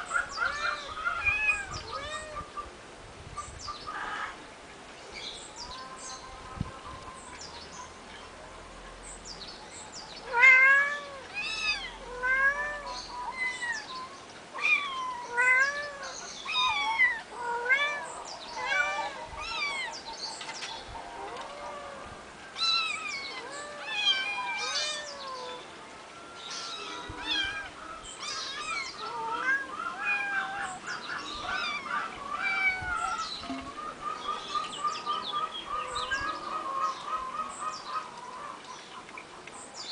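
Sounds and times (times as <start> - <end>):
kittens mewing: 10.3 - 13.8, 26.7 - 33.7.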